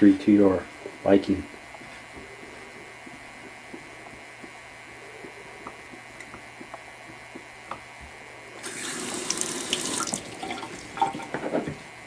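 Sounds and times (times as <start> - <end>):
water running into sink: 8.6 - 11.8.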